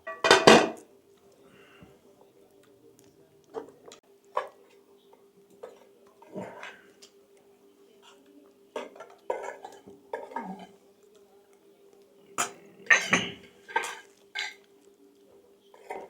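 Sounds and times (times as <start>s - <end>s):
dishes and utensils clinking: 0.0s - 0.9s, 8.7s - 10.8s, 12.4s - 14.7s.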